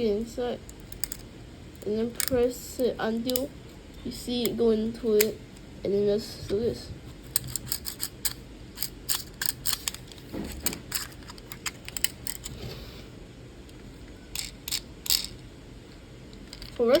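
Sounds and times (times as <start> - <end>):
small plastic parts clicking: 0.6 - 3.5, 7.3 - 12.6, 13.7 - 15.4, 16.3 - 17.0.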